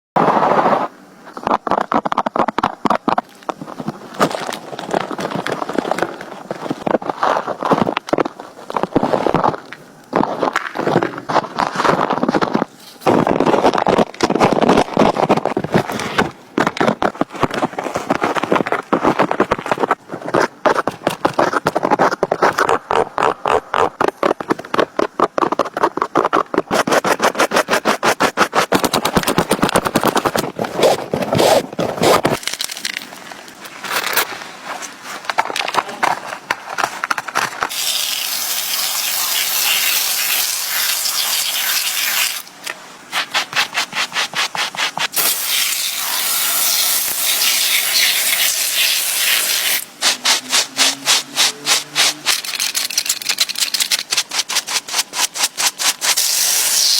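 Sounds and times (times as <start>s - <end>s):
brush scrubbing a sneaker: 17.0s - 32.4s, 37.7s - 42.5s, 43.1s - 56.9s.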